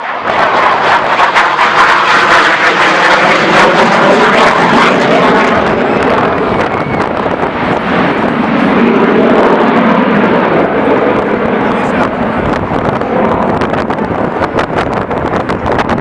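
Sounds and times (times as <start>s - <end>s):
jet passing low: 0.0s - 16.0s.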